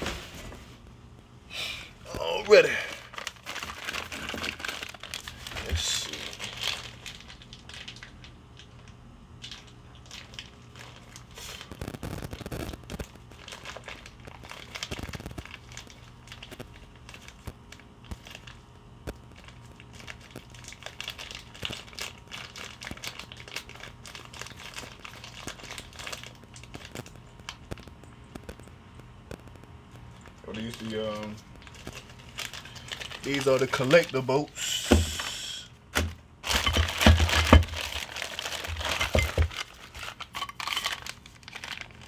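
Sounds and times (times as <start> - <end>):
paper and plastic crinkling: 2.0 - 42.0
dull thumps: 34.8 - 35.4.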